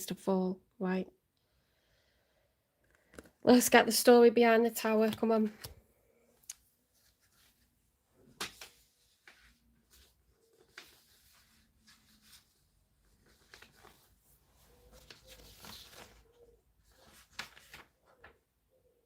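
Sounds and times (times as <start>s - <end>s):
paper rustling and tapping: 5.0s - 5.8s, 8.2s - 12.5s, 13.1s - 18.4s.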